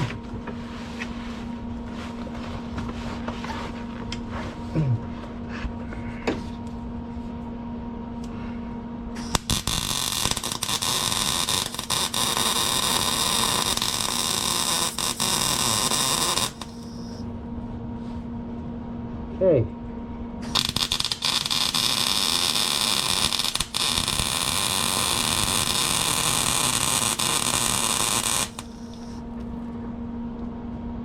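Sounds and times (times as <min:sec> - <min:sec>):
steady hum: 0:00.0 - 0:31.0
welder arc sizzling: 0:09.2 - 0:17.2, 0:20.4 - 0:29.2.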